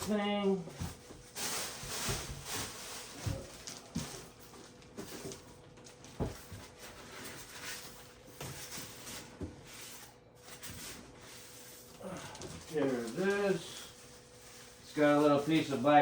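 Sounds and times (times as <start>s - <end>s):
hands rummaging through packaging: 0.0s - 16.0s.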